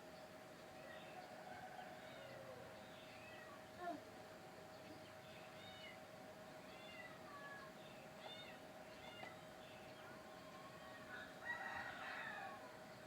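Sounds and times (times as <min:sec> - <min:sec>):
rooster crowing: 0:10.8 - 0:12.8.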